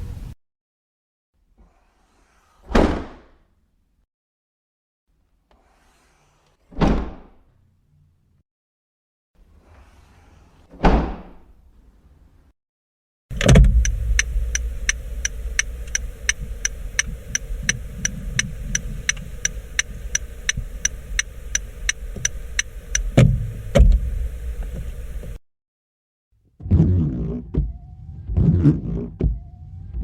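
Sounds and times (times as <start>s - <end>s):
car door shutting thud: 13.3s - 14.2s, 23.1s - 25.0s
car engine running: 13.3s - 25.4s
turn signal ticking: 13.3s - 25.4s
dull thump: 23.0s - 24.9s.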